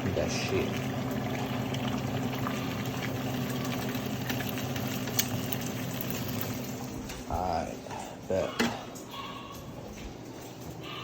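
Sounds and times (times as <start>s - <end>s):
eggs sizzling in hot oil: 0.0s - 8.0s.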